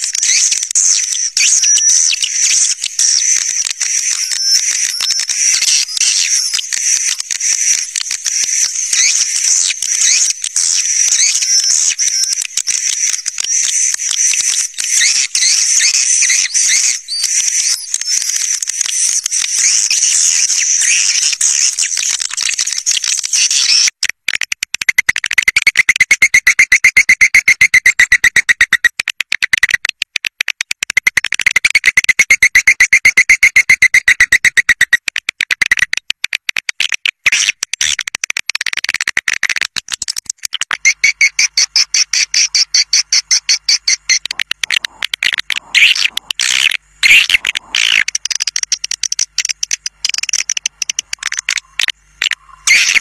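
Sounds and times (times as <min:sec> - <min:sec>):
swiftlets chirping and twittering: 0:00.0 - 0:23.9.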